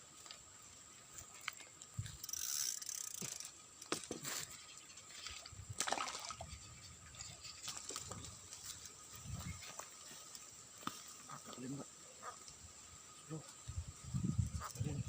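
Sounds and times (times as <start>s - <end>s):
water splashing and sloshing: 3.9s - 10.0s.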